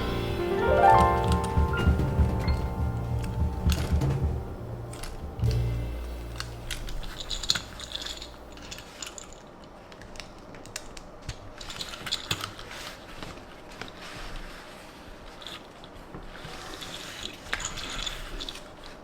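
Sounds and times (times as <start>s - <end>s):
low musical note: 0.0s - 8.6s.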